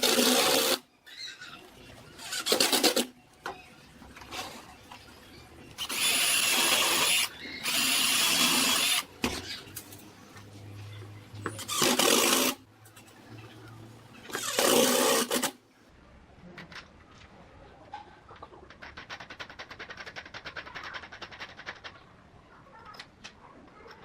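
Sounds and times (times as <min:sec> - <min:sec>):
power tool motor whining: 0:05.8 - 0:09.1.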